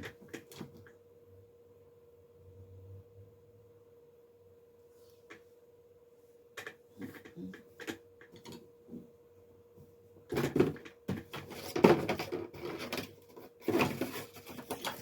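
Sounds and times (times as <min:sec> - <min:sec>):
faint steady hum: 0:00.0 - 0:15.0
packaging rustling and clattering: 0:10.3 - 0:15.0.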